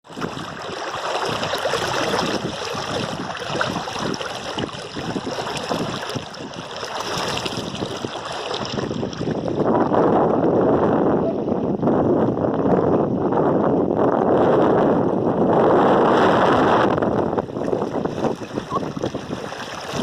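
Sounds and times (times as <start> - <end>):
river water rushing: 0.1 - 9.0, 17.6 - 20.0.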